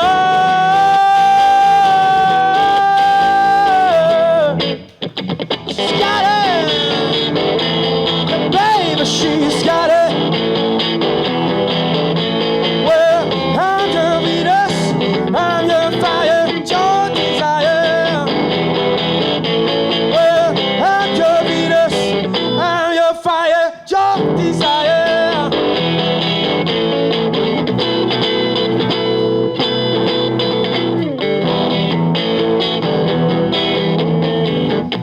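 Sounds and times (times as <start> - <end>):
live rock band playing: 0.0 - 22.8, 24.2 - 35.0
electric guitar: 0.0 - 35.0.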